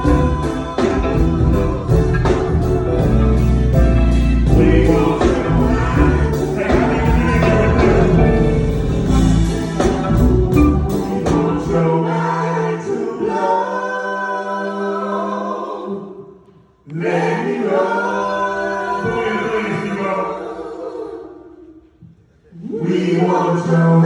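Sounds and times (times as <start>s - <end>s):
band music: 0.0s - 12.4s
group singing a cappella chords: 0.0s - 24.0s.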